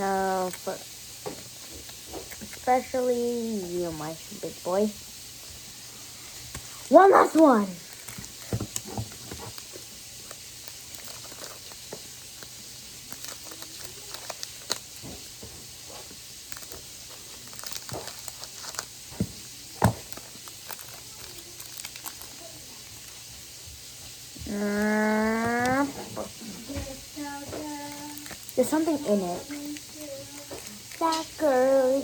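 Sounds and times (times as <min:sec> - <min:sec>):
foil wrapper crinkling: 0:00.0 - 0:32.0
steady hiss: 0:00.0 - 0:32.0
cards being handled: 0:06.4 - 0:23.2.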